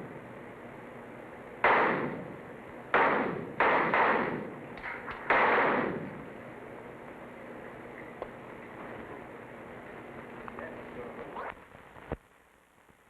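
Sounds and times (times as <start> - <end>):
pistol shots echoing: 1.6 - 6.3.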